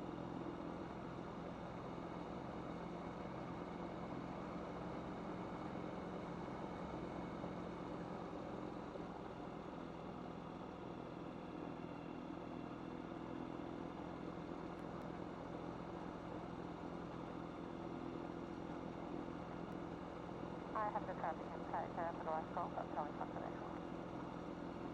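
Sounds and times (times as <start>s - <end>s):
aircraft engine and propeller droning: 10.5s - 24.9s.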